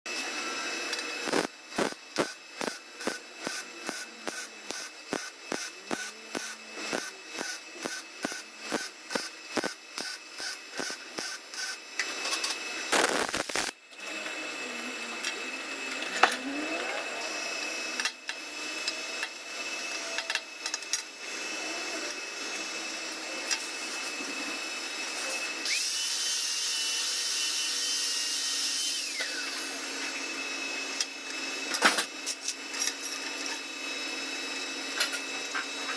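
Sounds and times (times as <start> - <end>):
high steady whine: 0.2 - 13.8
welding arc pulsing hiss: 0.5 - 13.8, 22.9 - 30.2.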